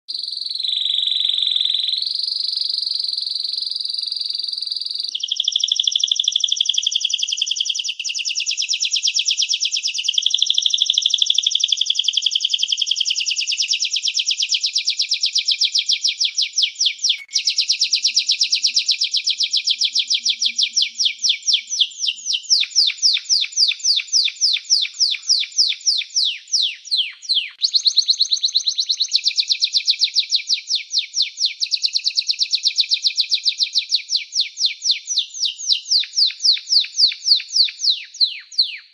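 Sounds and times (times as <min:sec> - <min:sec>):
songbird singing: 0:00.1 - 0:38.9.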